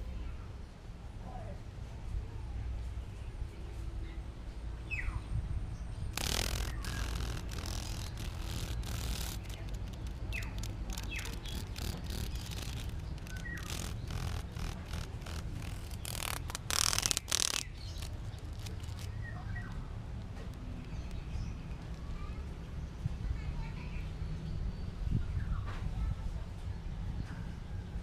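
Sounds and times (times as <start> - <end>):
faint bird chirping: 1.9 - 28.0
cicada buzzing: 6.1 - 19.2.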